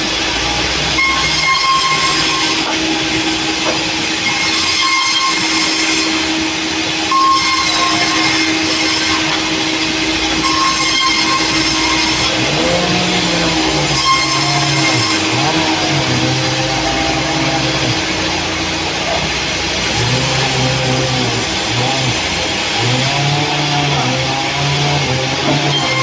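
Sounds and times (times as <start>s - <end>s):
saw blade whine: 0.0s - 26.0s
sawmill machine drone: 0.0s - 26.0s.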